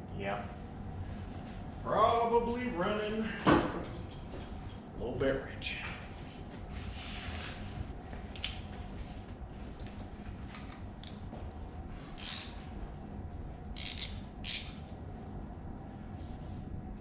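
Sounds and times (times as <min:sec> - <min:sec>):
steady low hum: 0:00.0 - 0:17.0
ratchet wrench clicking: 0:12.2 - 0:12.6, 0:13.8 - 0:14.8.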